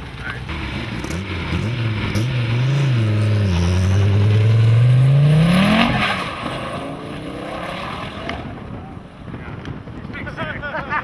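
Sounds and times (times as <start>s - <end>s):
car engine revving: 0.2s - 8.8s.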